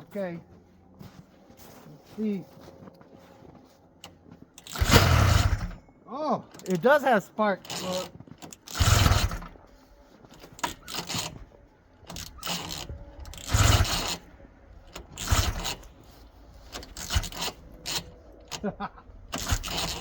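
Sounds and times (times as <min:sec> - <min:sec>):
recoil starter pulled: 0:04.0 - 0:05.8, 0:06.5 - 0:20.0
engine turning over: 0:04.0 - 0:05.9, 0:07.6 - 0:20.0
clanks and scrapes: 0:07.6 - 0:20.0.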